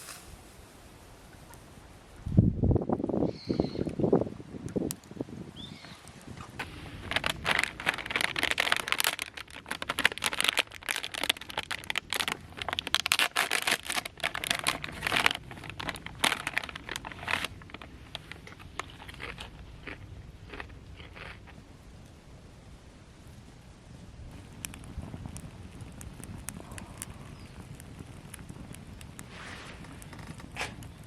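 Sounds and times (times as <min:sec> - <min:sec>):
dense crinkling and crunching: 0:06.5 - 0:21.5.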